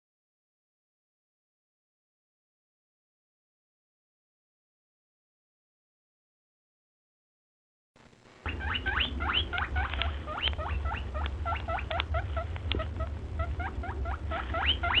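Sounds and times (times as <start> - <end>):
steady low hum: 8.0 - 15.0
guinea pig squealing: 8.5 - 15.0.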